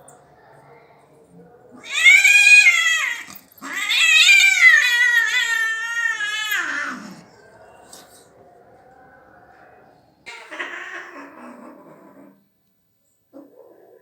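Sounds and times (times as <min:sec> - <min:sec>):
cat meowing: 0:01.8 - 0:07.2.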